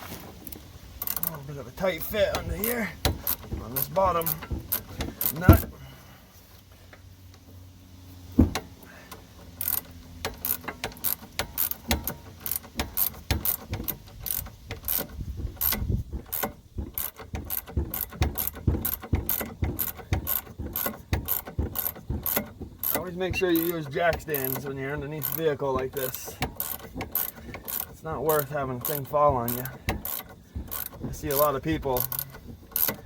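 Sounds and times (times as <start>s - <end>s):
ratcheting wrench clicking: 0.4s - 5.7s, 8.6s - 33.0s.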